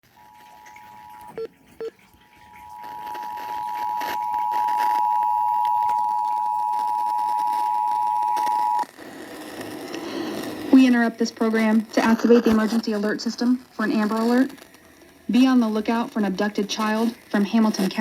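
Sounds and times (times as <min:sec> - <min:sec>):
two-tone alert signal: 0:00.1 - 0:01.9, 0:02.5 - 0:08.8
short beeps: 0:02.6 - 0:08.8.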